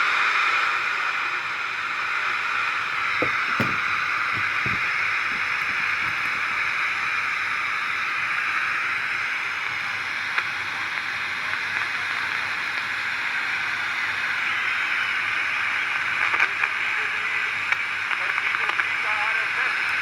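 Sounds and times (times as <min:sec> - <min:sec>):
radio static hiss: 0:13.5 - 0:20.0.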